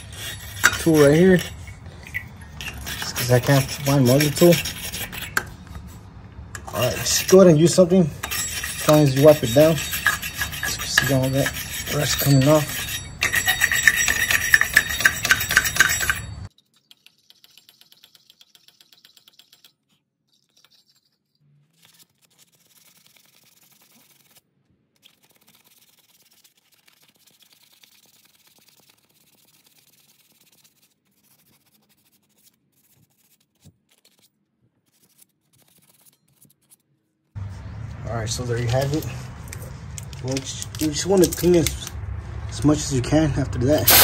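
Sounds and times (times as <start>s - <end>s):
wire brush scraping metal: 0.0s - 6.0s, 6.6s - 16.5s, 43.6s - 44.0s.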